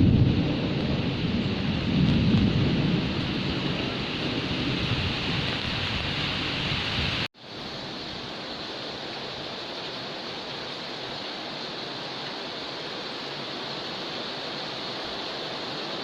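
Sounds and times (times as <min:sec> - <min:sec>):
low thunder rumble: 0:00.0 - 0:07.3
heavy rain hissing: 0:00.0 - 0:16.0.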